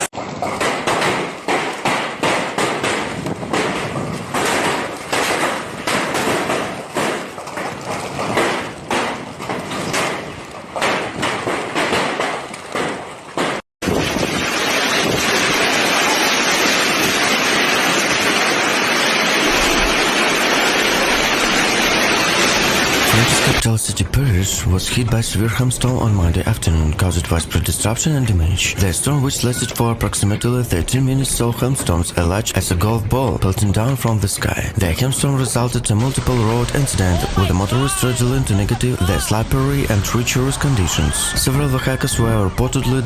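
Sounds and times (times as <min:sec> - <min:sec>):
gusting wind: 0:00.0 - 0:11.8, 0:13.8 - 0:23.1
heavy downpour hiss: 0:13.9 - 0:24.7, 0:34.4 - 0:43.0.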